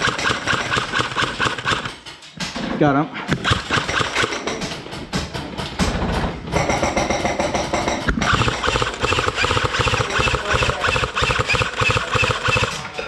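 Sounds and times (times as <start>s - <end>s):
airsoft gun full-auto rattle: 0.0s - 2.2s, 3.4s - 4.6s, 8.0s - 13.0s.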